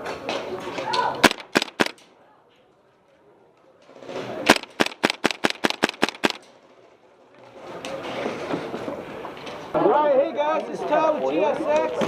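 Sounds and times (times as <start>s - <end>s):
airsoft gun shots: 1.2s - 2.1s, 4.5s - 6.5s.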